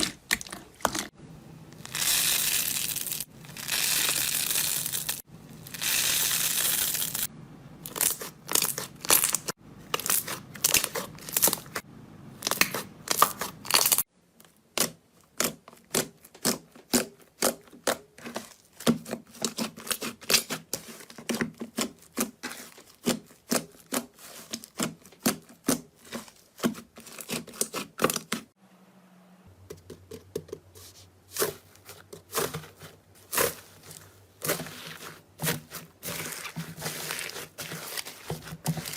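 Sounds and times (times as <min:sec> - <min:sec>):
slime crackling and popping: 0:12.4 - 0:14.0.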